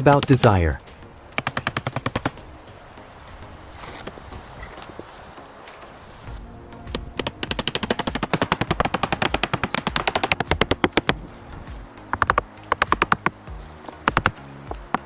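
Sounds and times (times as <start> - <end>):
hammer blows on wood: 9.2 - 15.0.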